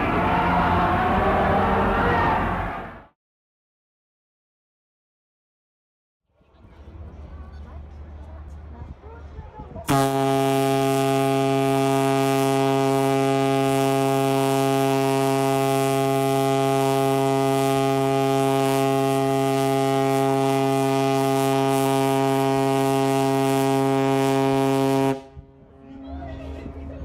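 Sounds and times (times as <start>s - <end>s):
ship's whistle blast: 9.9s - 25.3s.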